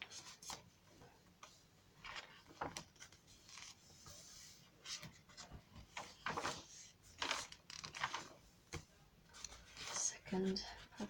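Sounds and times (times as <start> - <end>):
paper pages rustling: 2.0 - 3.8, 4.7 - 11.0.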